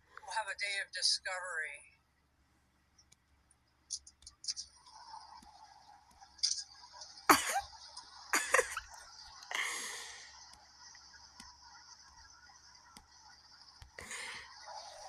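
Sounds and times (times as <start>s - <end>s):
person coughing and wheezing: 7.3s - 7.7s, 8.4s - 8.8s.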